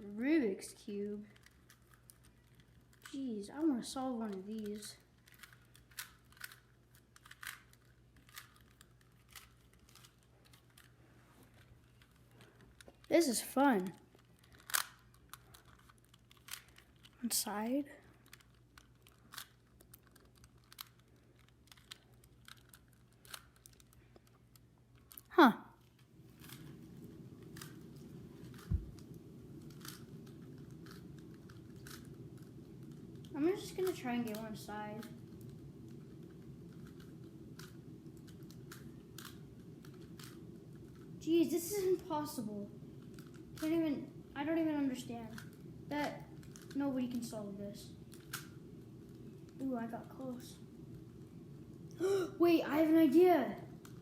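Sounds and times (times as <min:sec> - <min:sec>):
steady low hum: 0:00.0 - 0:54.0
puzzle cube plastic clicks: 0:01.2 - 0:11.0, 0:11.6 - 0:17.3, 0:18.0 - 0:41.2, 0:42.8 - 0:43.8, 0:45.0 - 0:52.0, 0:53.8 - 0:54.0
plastic puzzle cube clicks: 0:04.5 - 0:10.9, 0:13.9 - 0:17.2, 0:18.2 - 0:25.3
low thump: 0:28.6 - 0:29.0.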